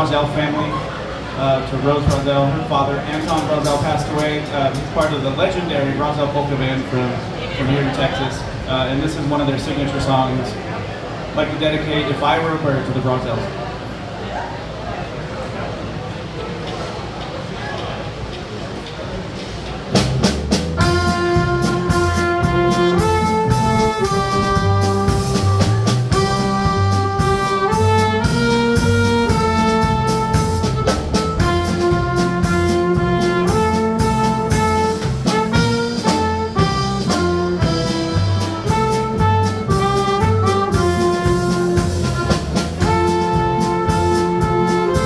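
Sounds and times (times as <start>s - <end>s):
polka band playing: 0.0s - 8.0s, 19.8s - 45.0s.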